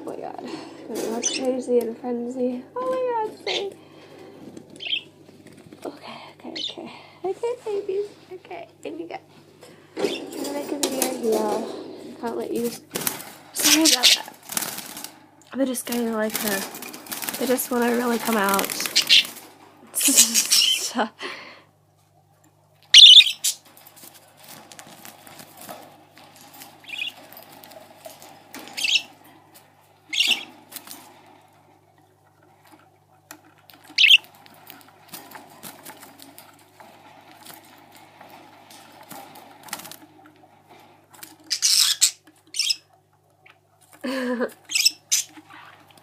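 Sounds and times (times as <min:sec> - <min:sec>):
wings fluttering and scuffling: 0:00.0 - 0:21.1, 0:22.0 - 0:46.0
baby budgerigars squawking and chirping: 0:00.5 - 0:01.8, 0:02.9 - 0:03.8, 0:04.8 - 0:05.1, 0:06.4 - 0:06.9, 0:10.0 - 0:15.0, 0:15.8 - 0:21.0, 0:22.9 - 0:23.7, 0:26.6 - 0:27.8, 0:28.6 - 0:29.2, 0:30.0 - 0:31.0, 0:33.7 - 0:36.0, 0:41.2 - 0:45.9.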